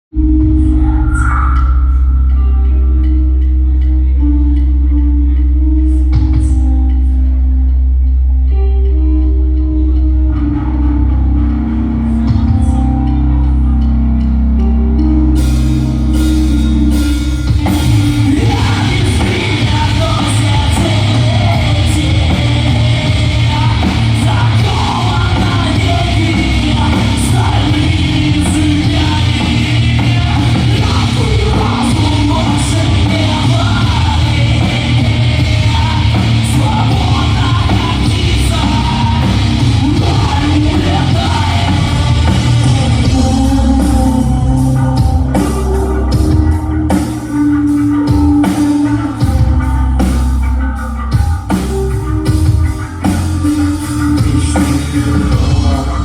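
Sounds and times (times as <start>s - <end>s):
bass and guitar: 0.0s - 56.0s
drums: 0.0s - 56.0s
person singing: 0.2s - 56.0s.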